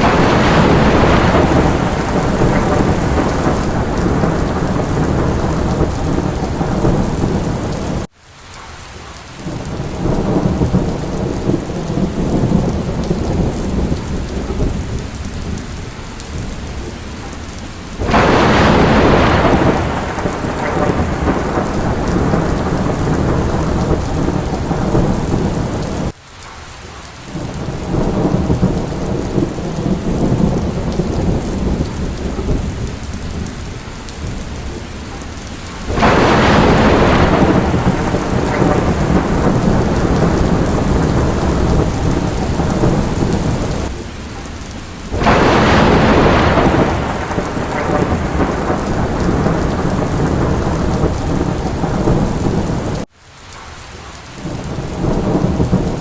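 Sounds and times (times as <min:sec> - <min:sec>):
loud thunder clap: 0:00.0 - 0:08.1, 0:18.0 - 0:26.1, 0:34.2 - 0:44.0, 0:45.1 - 0:53.1, 0:54.4 - 0:56.0
low rumble of thunder: 0:00.0 - 0:08.1, 0:09.4 - 0:26.1, 0:27.3 - 0:53.1, 0:54.4 - 0:56.0
heavy rain: 0:00.0 - 0:56.0.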